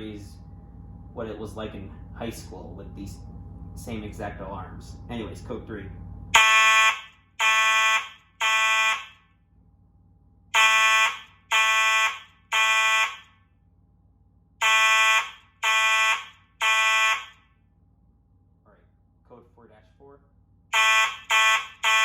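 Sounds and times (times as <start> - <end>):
fire alarm horn blasts: 6.3 - 9.4, 10.5 - 13.5, 14.6 - 17.6, 20.7 - 22.0.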